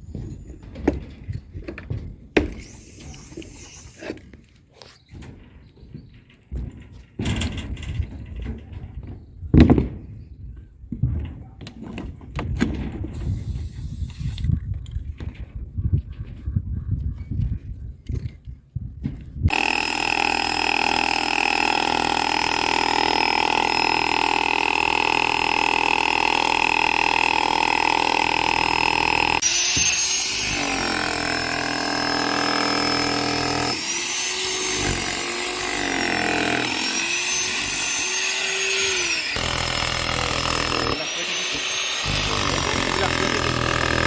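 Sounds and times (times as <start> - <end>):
power tool cutting into wall: 2.6 - 4.2, 19.5 - 44.0
power tool whining: 19.5 - 44.0.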